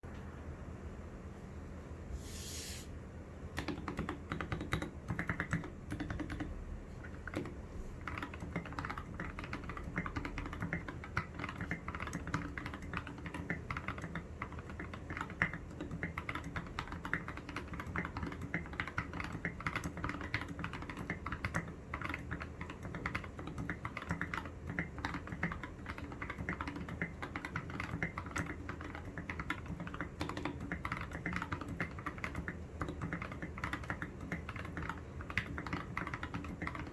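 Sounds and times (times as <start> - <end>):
brief hiss: 2.1 - 3.0.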